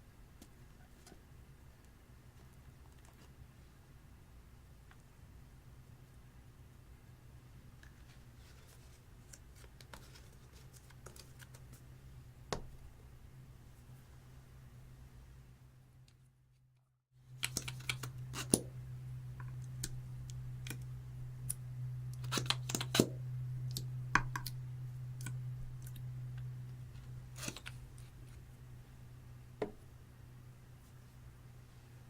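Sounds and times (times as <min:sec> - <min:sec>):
steady low hum: 0:17.2 - 0:32.0.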